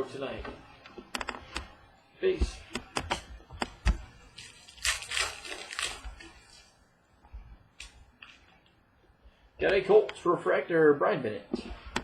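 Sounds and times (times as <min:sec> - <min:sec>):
wrapper crinkling: 0:04.3 - 0:06.7.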